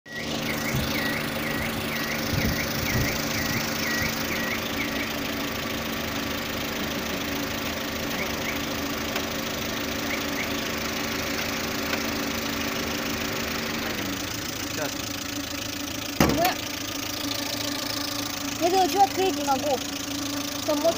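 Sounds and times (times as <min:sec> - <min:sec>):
car engine idling: 0:00.1 - 0:20.9.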